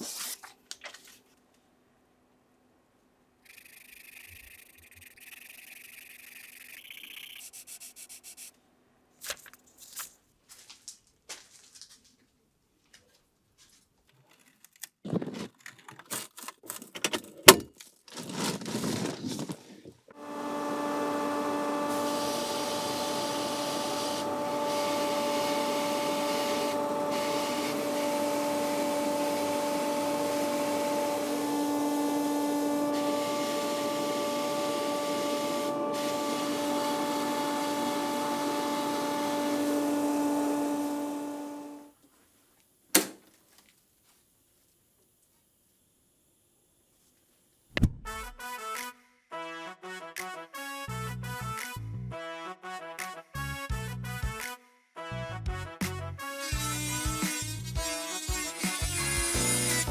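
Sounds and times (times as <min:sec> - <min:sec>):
small parts clicking: 0:03.4 - 0:07.6
power tool grinding metal: 0:20.2 - 0:41.9, 0:56.4 - 0:59.9.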